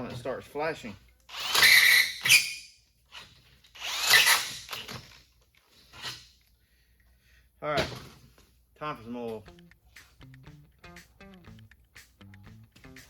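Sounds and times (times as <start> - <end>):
cordless drill drilling metal: 1.3 - 5.0.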